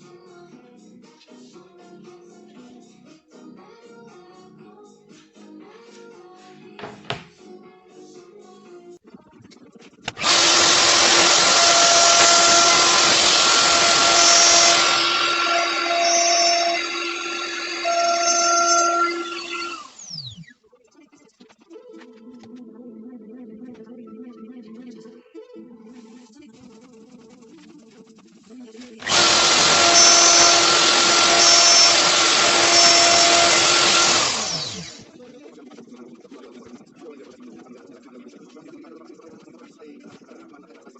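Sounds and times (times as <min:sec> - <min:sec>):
power tool motor whine: 0:10.1 - 0:20.4, 0:29.0 - 0:35.1.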